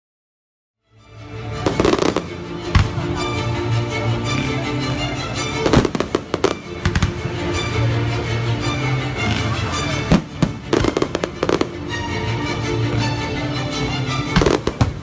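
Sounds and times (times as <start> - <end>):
music with sustained tones: 0.8 - 15.0
fireworks banging: 1.6 - 3.1, 5.6 - 7.4, 9.2 - 11.7, 14.3 - 15.0.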